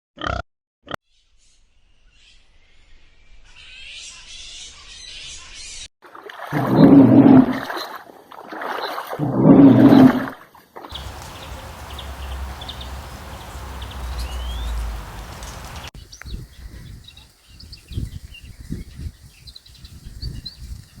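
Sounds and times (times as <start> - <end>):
birds chirping: 10.9 - 17.3.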